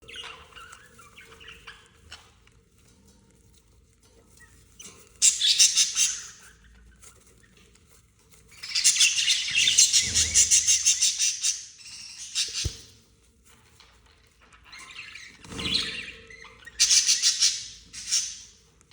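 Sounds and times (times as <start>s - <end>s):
budgerigars chirping: 0.0s - 2.3s, 4.8s - 6.8s, 8.5s - 12.9s, 14.7s - 18.5s
budgerigars chattering: 5.2s - 6.5s, 8.6s - 12.8s, 14.8s - 18.5s.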